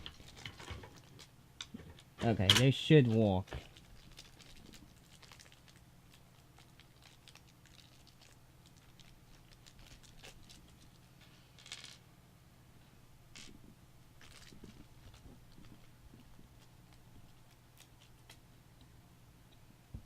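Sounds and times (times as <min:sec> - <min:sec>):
low steady hum: 0:00.0 - 0:20.0
small screws clicking and scraping: 0:08.6 - 0:12.0.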